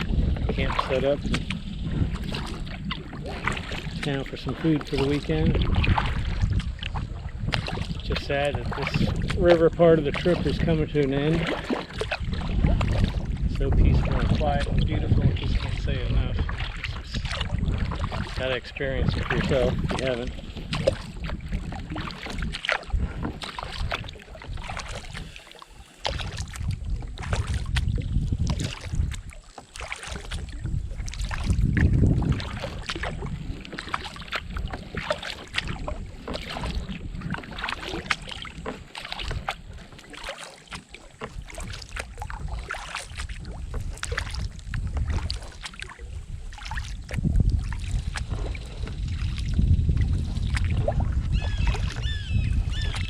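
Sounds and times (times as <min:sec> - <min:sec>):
paddle blades splashing: 0:00.0 - 0:53.0
wind buffeting microphone: 0:00.0 - 0:53.0
water dripping and trickling: 0:14.4 - 0:53.0.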